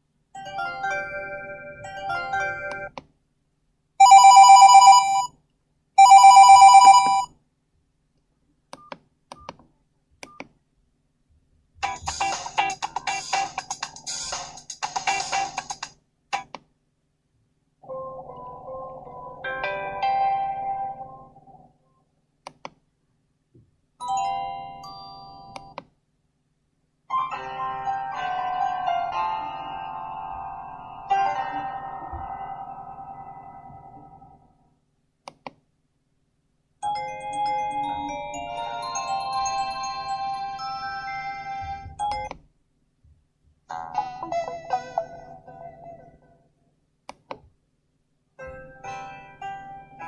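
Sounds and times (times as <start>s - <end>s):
phone ringtone warbling trill: 4.0s - 5.3s, 6.0s - 7.3s, 36.9s - 41.5s
phone ringtones from small loudspeaker: 4.0s - 5.3s, 6.0s - 7.3s
melodic tone: 36.9s - 42.3s.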